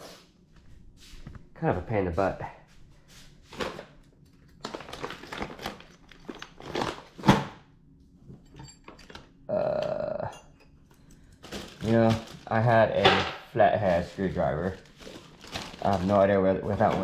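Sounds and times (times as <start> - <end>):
rustling and clunking of tools: 3.1 - 7.6, 8.2 - 9.4, 10.4 - 17.0.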